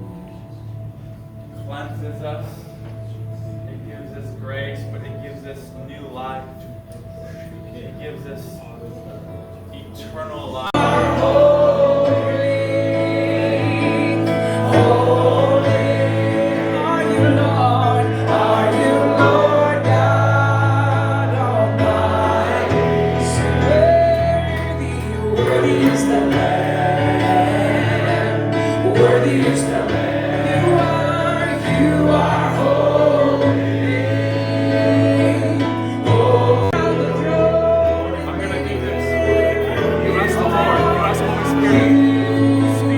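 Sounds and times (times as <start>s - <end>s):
voices singing gospel song: 10.5s - 42.9s
sustained bass chords: 10.7s - 42.9s.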